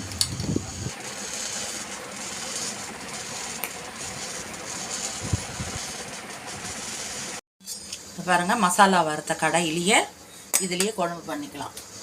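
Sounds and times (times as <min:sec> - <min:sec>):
electric mixer grinder running: 0:00.0 - 0:07.4.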